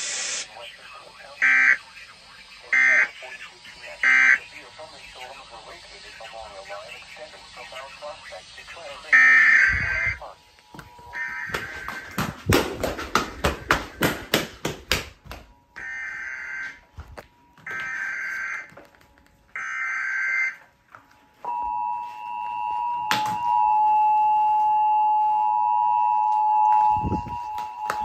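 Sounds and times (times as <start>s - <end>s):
rasping digital data bursts: 0.0s - 10.4s.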